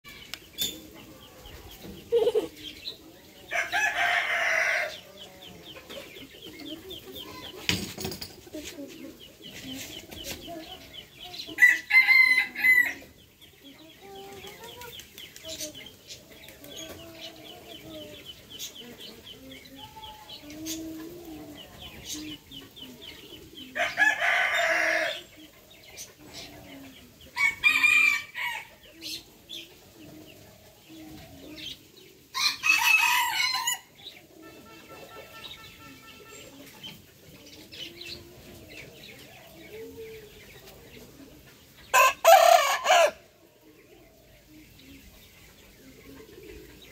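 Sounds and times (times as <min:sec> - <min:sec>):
chickens clucking: 0:00.0 - 0:46.9
rooster crowing: 0:11.6 - 0:13.0, 0:41.9 - 0:43.2.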